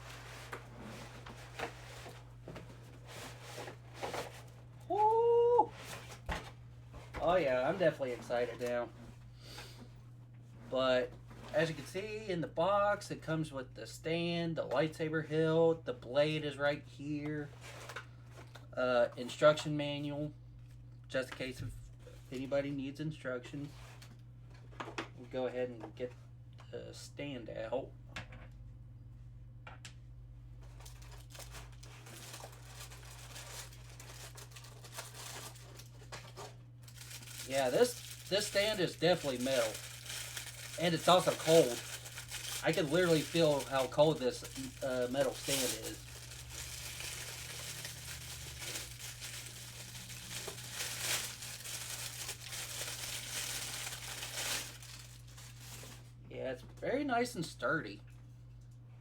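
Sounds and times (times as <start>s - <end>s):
packaging rustling and crinkling: 0.0s - 4.6s, 30.6s - 56.2s
low electrical hum: 0.0s - 59.0s.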